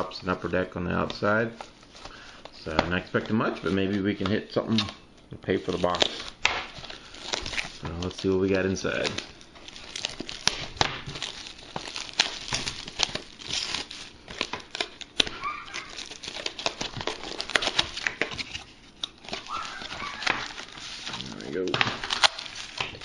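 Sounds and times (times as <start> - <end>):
crinkling and rustling: 0.0 - 23.0
packaging being torn open: 5.7 - 23.0.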